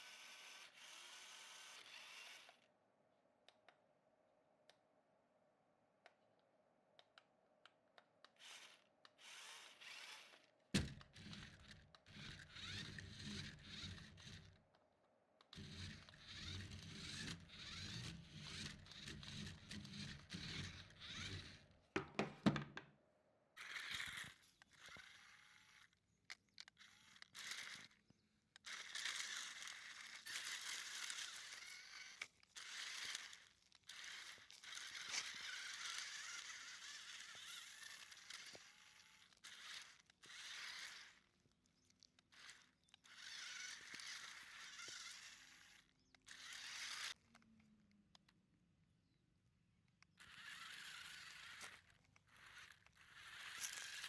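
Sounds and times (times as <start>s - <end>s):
small electric motor running: 0.0s - 2.6s, 8.4s - 14.6s, 15.5s - 21.8s, 23.6s - 26.0s, 26.6s - 41.4s, 42.2s - 47.4s, 50.2s - 54.0s
knock: 22.0s - 22.9s.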